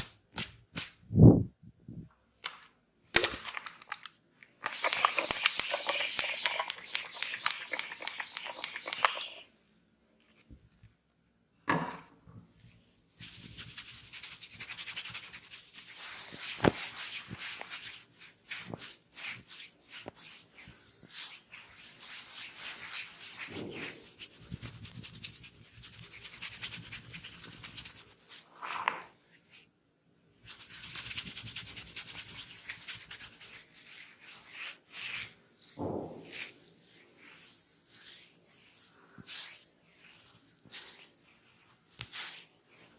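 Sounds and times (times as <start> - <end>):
scratching on scalp and hair: 4.6 - 9.5, 13.2 - 28.5, 30.4 - 42.9.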